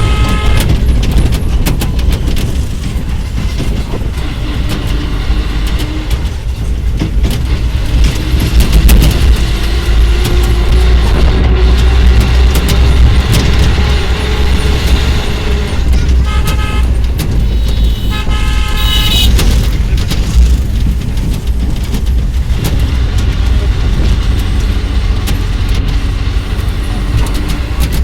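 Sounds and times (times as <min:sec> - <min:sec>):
vehicle horn blasts: 0:00.0 - 0:00.8, 0:12.7 - 0:19.8
vehicle rumbling on road: 0:00.0 - 0:28.0.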